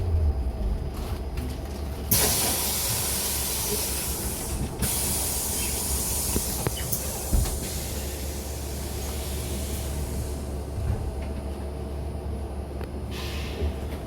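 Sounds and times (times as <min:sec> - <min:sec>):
bus low hum: 0:00.0 - 0:14.0
compressed air hissing: 0:02.1 - 0:10.5.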